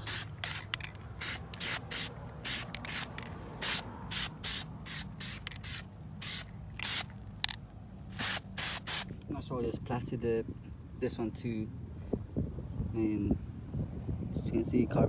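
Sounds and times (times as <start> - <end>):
aerosol can spraying: 0.0 - 7.1, 8.1 - 9.1.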